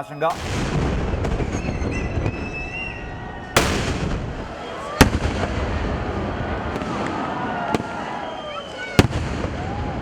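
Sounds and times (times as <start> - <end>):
firework whistles: 0.0 - 5.2, 7.7 - 9.1
firecrackers crackling: 0.3 - 9.8
firework bangs: 0.3 - 10.0.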